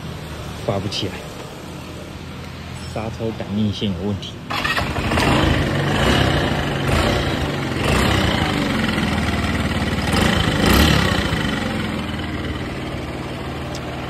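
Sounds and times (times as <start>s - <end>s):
scooter engine idling: 4.5s - 14.0s.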